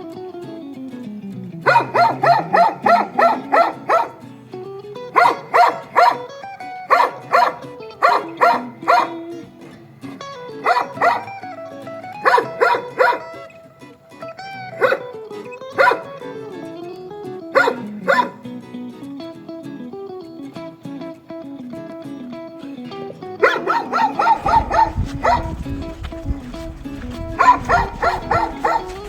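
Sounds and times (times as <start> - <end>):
background music: 0.0 - 29.0
dog barking: 1.6 - 4.4, 5.1 - 9.8, 10.6 - 11.6, 12.2 - 13.6, 14.4 - 16.6, 17.5 - 18.5, 23.4 - 29.0.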